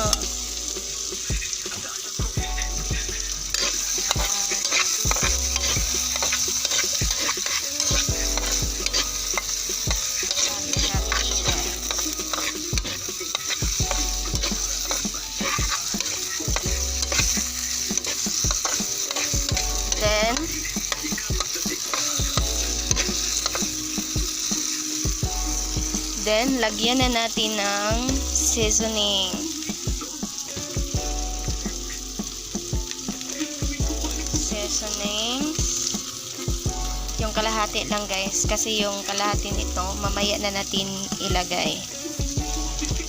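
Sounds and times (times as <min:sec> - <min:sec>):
food sizzling in oil: 0:00.0 - 0:43.0
utensil scraping and tapping pan: 0:03.6 - 0:23.8.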